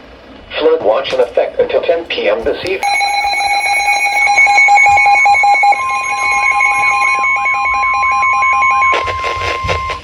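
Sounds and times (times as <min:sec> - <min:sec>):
warbling sweep tone: 0:02.8 - 0:09.0
rapidly pulsing beep: 0:02.8 - 0:10.0
steady electronic tone: 0:02.8 - 0:10.0.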